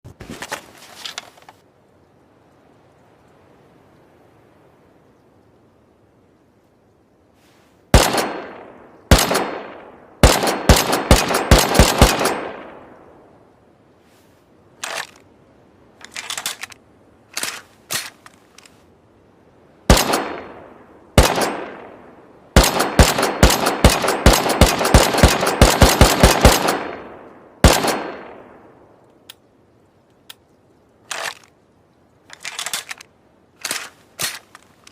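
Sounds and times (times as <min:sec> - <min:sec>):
rifle gunshots with echo: 0:07.9 - 0:13.0, 0:19.9 - 0:28.8
quiet clicks: 0:29.0 - 0:31.6, 0:32.2 - 0:34.9.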